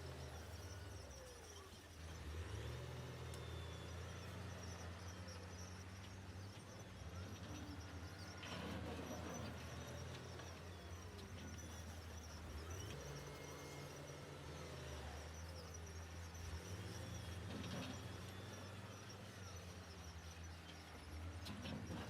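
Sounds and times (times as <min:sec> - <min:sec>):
heavy machinery engine running: 0:00.0 - 0:22.0.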